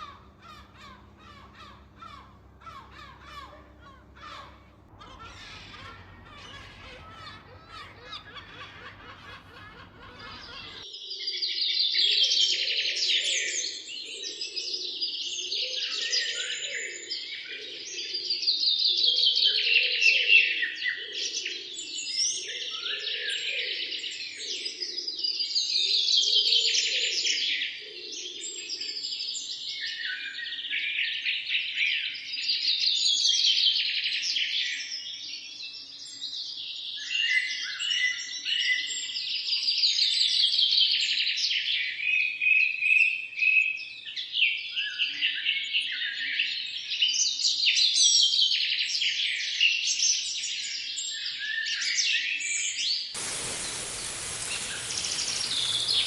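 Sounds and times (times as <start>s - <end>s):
low pulsing bird call: 0.0s - 10.8s, 53.2s - 56.0s
songbirds chirping and trilling: 0.0s - 11.2s, 53.2s - 56.0s.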